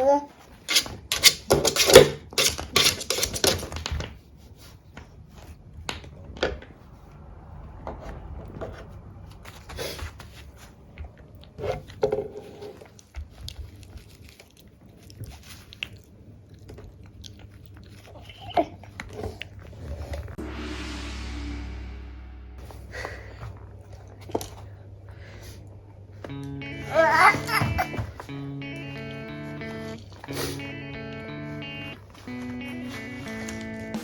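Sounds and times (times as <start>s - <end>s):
dog chewing with crunching clicks: 12.8s - 19.6s.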